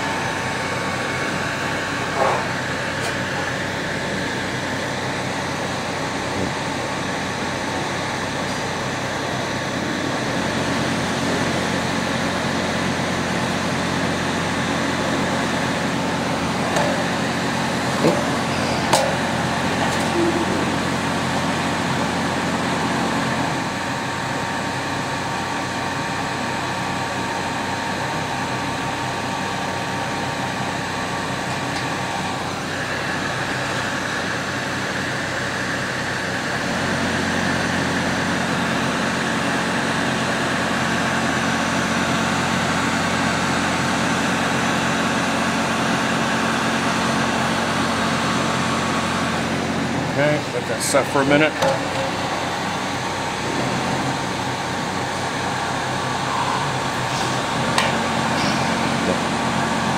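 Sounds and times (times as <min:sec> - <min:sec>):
machine drone: 0:00.0 - 0:59.9.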